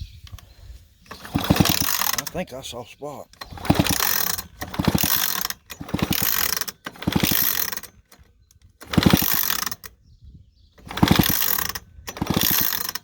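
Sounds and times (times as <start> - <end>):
chainsaw recoil starter pulls: 1.0 - 10.0, 10.8 - 13.0
engine spinning over: 1.1 - 2.4, 3.4 - 10.0, 10.8 - 13.0.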